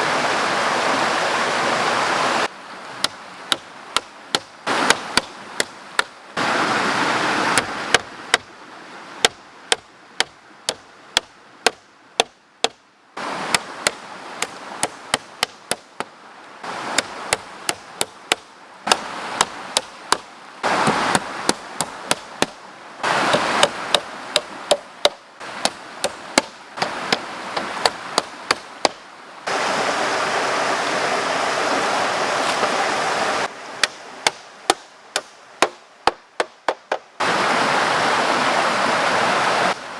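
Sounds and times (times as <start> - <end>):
river rushing: 0.0 - 39.9
blade chopping wood: 3.0 - 6.2, 7.5 - 8.5, 9.2 - 12.8, 13.4 - 16.1, 16.8 - 29.0, 33.8 - 37.1.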